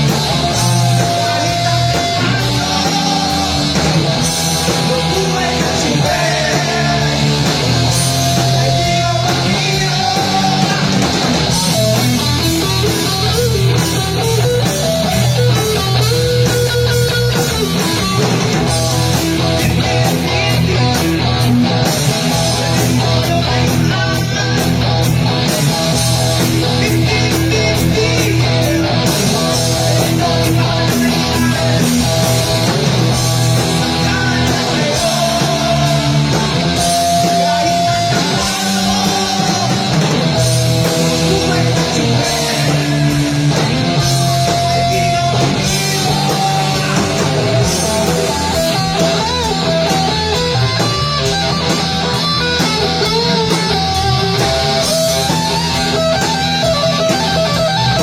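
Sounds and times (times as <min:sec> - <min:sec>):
live rock band playing: 0:00.0 - 0:58.0.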